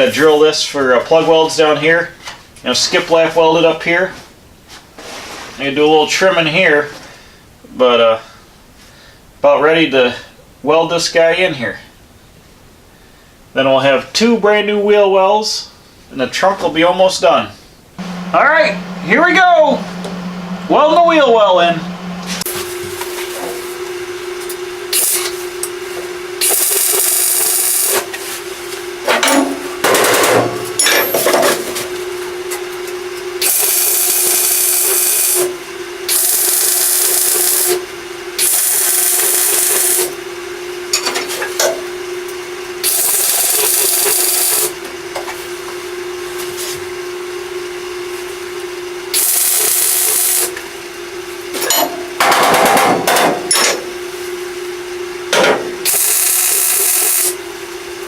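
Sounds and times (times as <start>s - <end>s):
steady hum: 17.7s - 45.2s
welder hissing: 18.0s - 23.6s, 26.4s - 28.1s, 33.4s - 35.5s, 36.1s - 37.8s, 38.4s - 40.2s, 42.8s - 44.7s, 49.2s - 50.6s, 55.8s - 57.4s.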